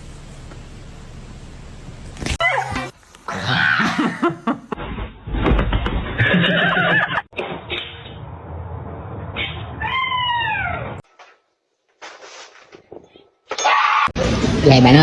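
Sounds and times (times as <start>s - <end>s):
knocks and rustling: 4.8s - 6.4s
cat meowing: 9.8s - 11.0s.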